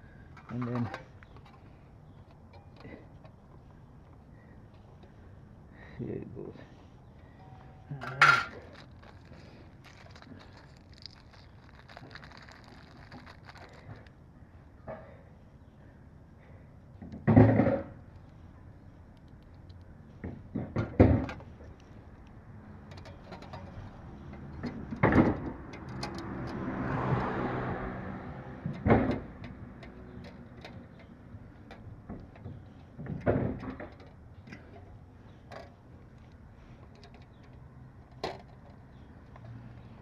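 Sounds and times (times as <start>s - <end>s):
passing vehicle: 21.2s - 33.0s, 35.3s - 40.0s.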